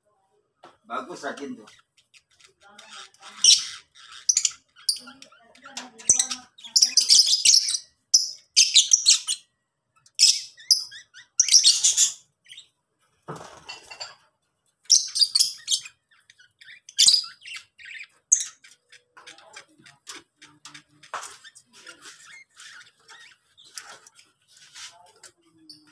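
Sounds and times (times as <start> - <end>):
lovebirds chattering: 1.1 - 12.8, 14.9 - 25.9
soft rustle: 23.8 - 25.4.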